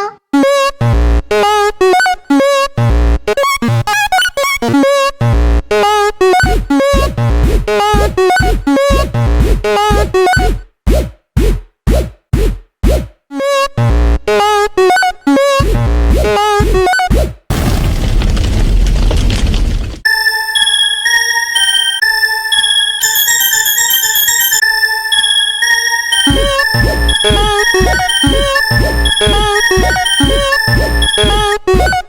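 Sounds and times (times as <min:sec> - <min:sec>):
electronic dance track: 0:25.2 - 0:31.9.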